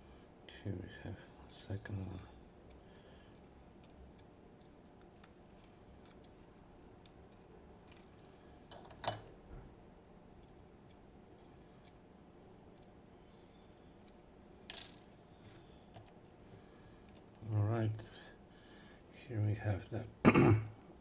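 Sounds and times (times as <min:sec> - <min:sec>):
lock parts clicking and tapping: 0:07.0 - 0:09.3.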